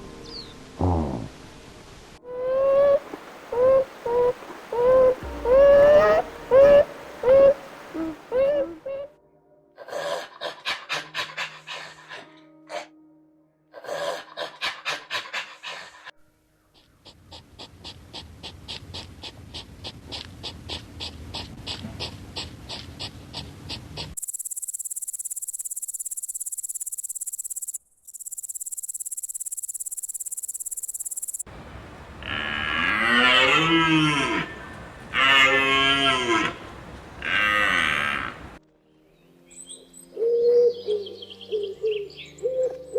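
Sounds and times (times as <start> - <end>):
long fast pulsing call: 24.2 - 31.4
high-pitched insect-like buzz: 24.2 - 31.5
rapid trilling pulses: 24.2 - 31.5
short repeated chirping calls: 24.2 - 31.5.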